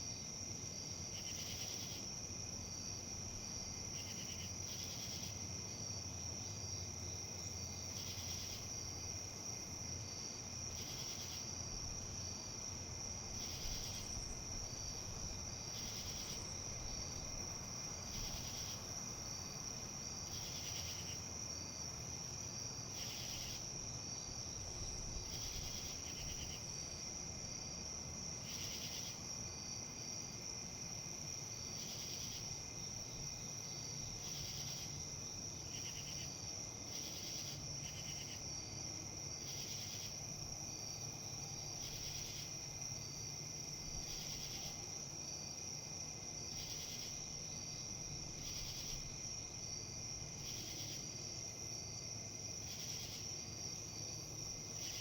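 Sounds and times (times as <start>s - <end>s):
insects trilling: 0.0s - 55.0s
insect pulsed call: 3.6s - 5.4s, 7.2s - 9.0s, 10.2s - 27.8s, 28.4s - 29.3s, 31.1s - 55.0s
wind rustle: 8.6s - 36.8s.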